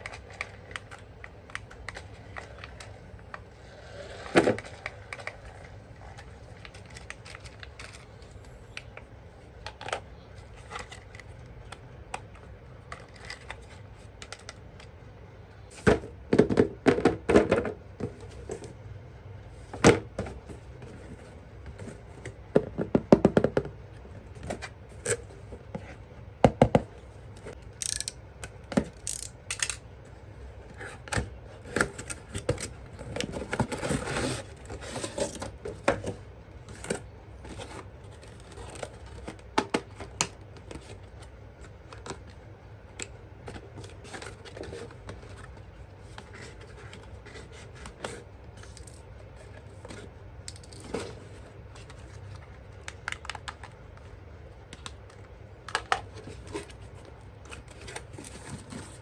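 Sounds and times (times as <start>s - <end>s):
plastic toy parts clicking: 27.6s - 28.2s, 28.9s - 29.8s.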